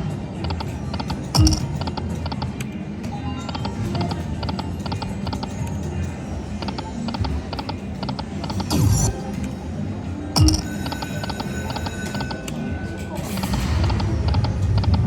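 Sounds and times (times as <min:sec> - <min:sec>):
casino background noise: 0:00.0 - 0:15.0
slot machine clicking ticks: 0:00.4 - 0:02.7, 0:10.4 - 0:12.6, 0:13.5 - 0:15.0.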